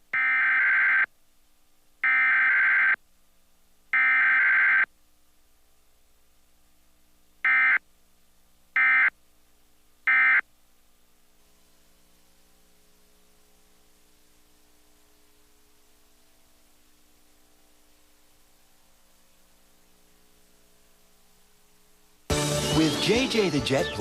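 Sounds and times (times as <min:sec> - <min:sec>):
digital data tone bursts: 0:00.2 - 0:01.1, 0:02.0 - 0:03.0, 0:04.0 - 0:04.9, 0:07.4 - 0:07.8, 0:08.8 - 0:09.1, 0:10.1 - 0:10.4.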